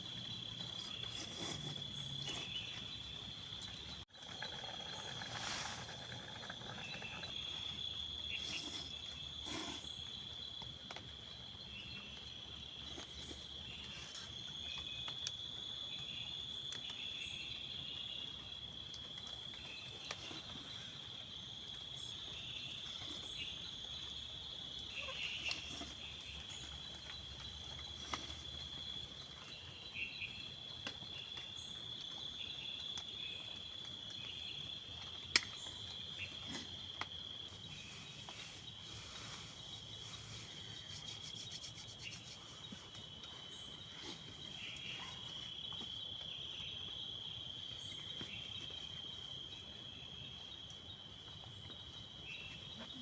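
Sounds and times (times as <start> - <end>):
insects trilling: 0.0 - 53.0
short insect chirps: 33.3 - 49.5.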